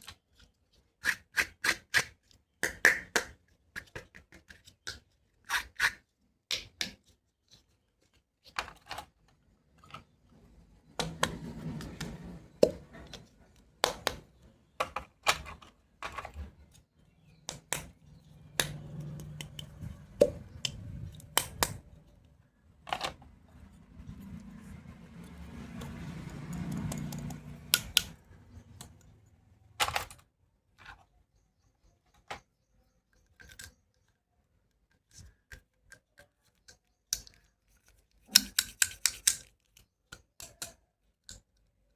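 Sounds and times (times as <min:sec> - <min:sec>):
plastic rubbing and scraping: 0:07.4 - 0:31.4
plastic toy clicks and taps: 0:17.5 - 0:21.8, 0:25.8 - 0:29.1, 0:38.3 - 0:41.6.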